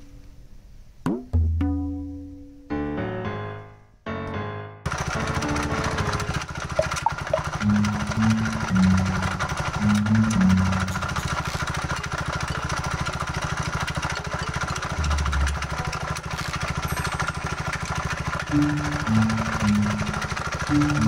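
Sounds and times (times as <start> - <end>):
background music: 1.1 - 6.5, 7.6 - 11.2, 14.1 - 17.4, 18.4 - 21.0
motorcycle engine idling: 4.9 - 21.0.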